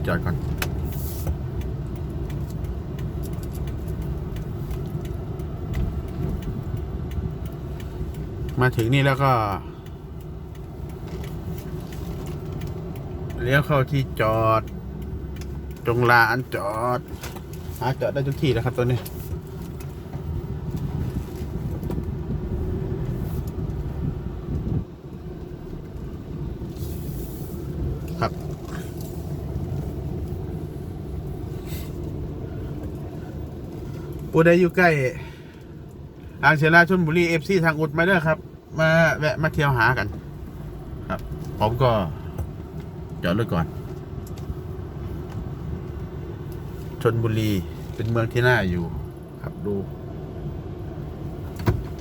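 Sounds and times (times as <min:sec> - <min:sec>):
engine and road noise rumble: 0:00.0 - 0:52.0
faint light ticks: 0:00.5 - 0:22.1.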